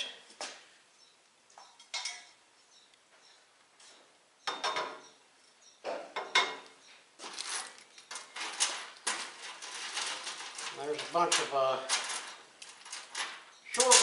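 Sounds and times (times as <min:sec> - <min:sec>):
small metal parts clinking: 0:07.2 - 0:14.0.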